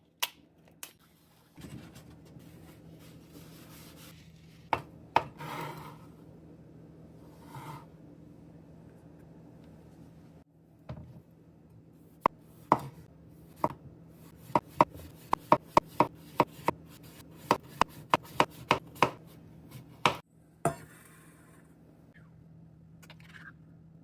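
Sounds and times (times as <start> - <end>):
knife scraping board: 5.2 - 6.1, 7.3 - 7.9
knife chopping on cutting board: 12.7 - 13.8, 14.4 - 20.8.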